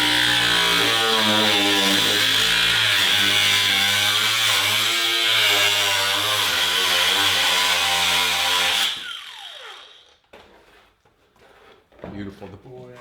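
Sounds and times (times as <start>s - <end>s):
power tool cutting sheet metal: 0.0s - 10.2s.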